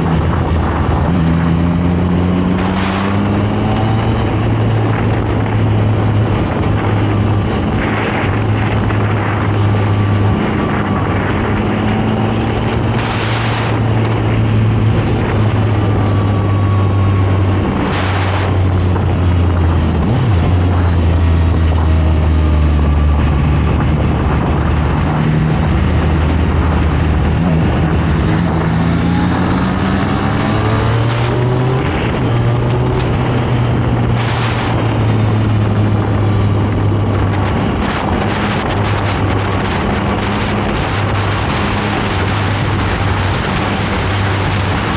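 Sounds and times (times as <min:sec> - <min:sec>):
motorcycle engine running: 0:00.0 - 0:44.9
wind on microphone: 0:00.0 - 0:44.9.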